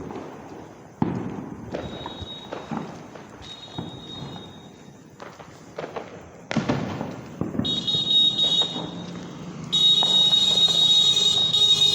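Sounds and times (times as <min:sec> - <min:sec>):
firecracker crack: 0:00.0 - 0:11.9
shrill firework whistle: 0:01.7 - 0:04.9, 0:07.5 - 0:11.9.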